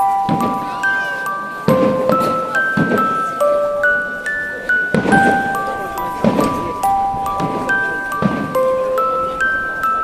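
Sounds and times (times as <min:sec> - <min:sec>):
glockenspiel melody: 0:00.0 - 0:10.0.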